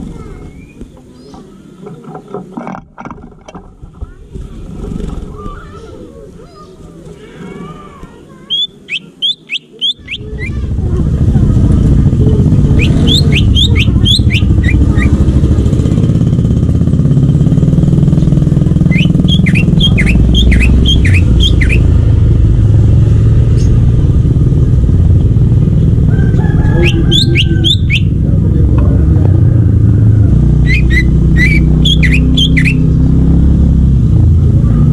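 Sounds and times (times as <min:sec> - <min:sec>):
bird singing sharp chirps: 0:08.4 - 0:10.7, 0:12.7 - 0:15.4, 0:18.2 - 0:22.2, 0:26.7 - 0:28.2, 0:30.6 - 0:33.1
engine-like low rumble: 0:10.0 - 0:34.9.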